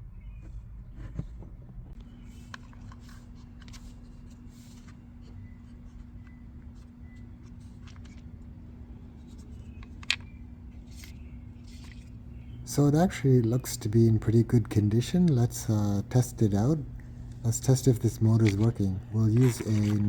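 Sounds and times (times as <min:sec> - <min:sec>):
steady low hum: 0:00.0 - 0:20.0
plastic part clicking and scraping: 0:18.3 - 0:20.0.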